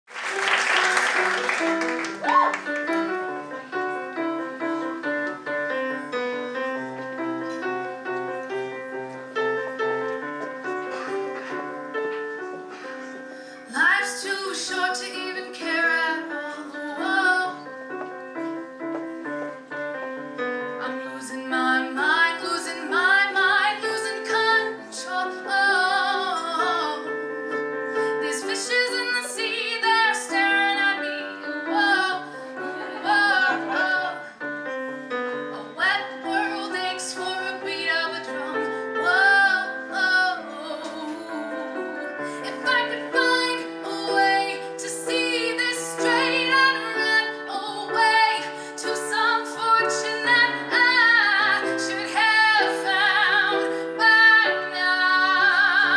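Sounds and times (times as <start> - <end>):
piano accompaniment: 0.0 - 55.9
woman singing a slow song: 13.7 - 17.8, 20.8 - 27.3, 28.0 - 34.4, 35.4 - 55.9.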